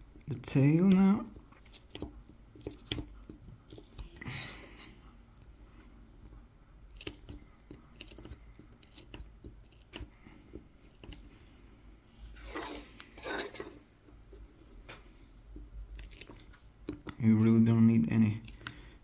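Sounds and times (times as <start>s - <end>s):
knife scratching wood: 0.6s - 5.0s, 6.9s - 11.3s, 12.2s - 13.8s, 15.9s - 16.6s.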